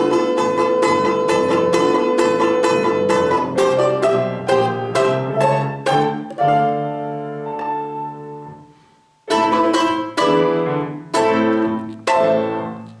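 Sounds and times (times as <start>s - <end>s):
ringing plucked chords: 0.0s - 7.1s.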